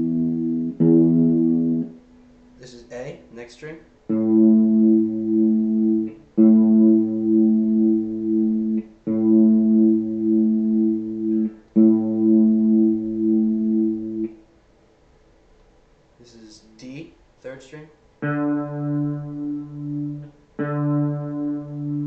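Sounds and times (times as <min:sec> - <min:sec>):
guitar string plucked: 0:04.1 - 0:14.4, 0:18.2 - 0:22.0.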